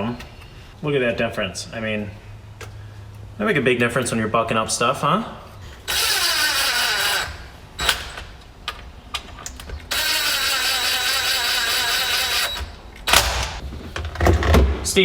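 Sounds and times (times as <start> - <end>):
power drill running: 5.9 - 8.3, 9.9 - 13.6
drill click: 5.9 - 8.5, 9.4 - 13.6.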